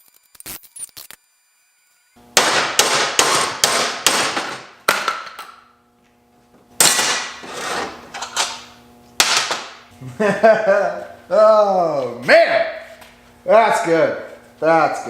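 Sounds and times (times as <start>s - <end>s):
hammer striking metal: 2.4s - 5.5s.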